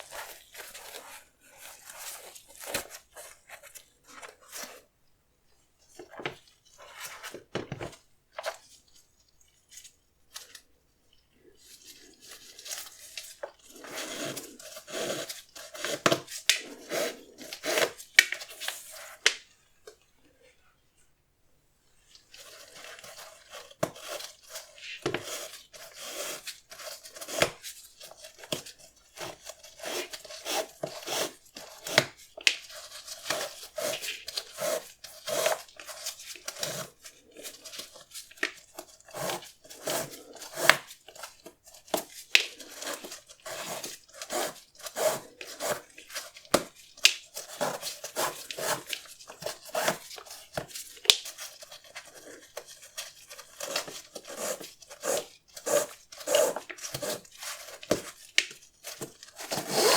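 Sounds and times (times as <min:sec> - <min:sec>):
packaging rustling and crinkling: 0:00.0 - 0:04.9.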